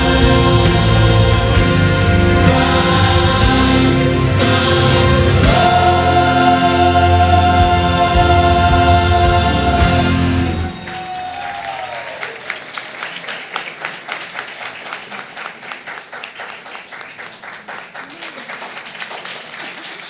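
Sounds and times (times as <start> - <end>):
congregation applauding: 0.0 - 20.0
voice over clapping: 11.4 - 20.0.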